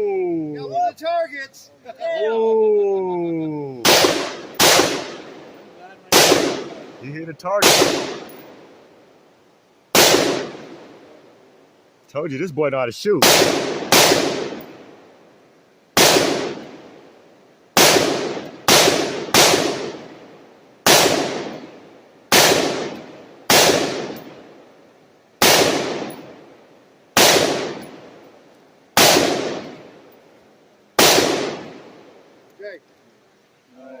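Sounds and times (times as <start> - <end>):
gunshots with long echo: 3.8 - 8.8, 9.9 - 11.2, 13.1 - 15.0, 16.0 - 17.1, 17.8 - 24.6, 25.4 - 28.3, 29.0 - 30.1, 31.0 - 32.3.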